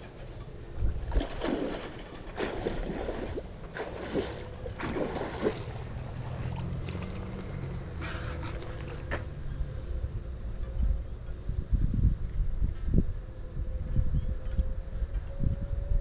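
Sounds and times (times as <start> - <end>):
wind buffeting microphone: 0.0 - 16.0
water splashing: 0.7 - 9.1.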